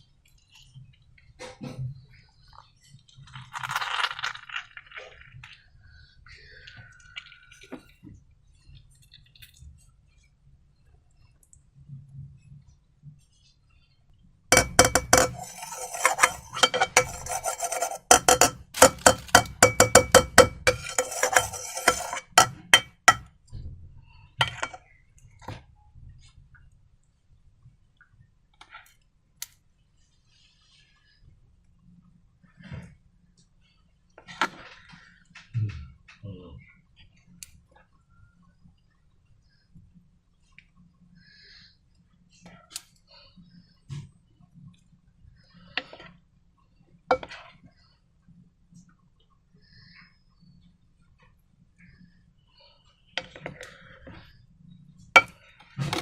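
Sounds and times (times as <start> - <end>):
hard objects clinking in container: 14.5 - 23.2.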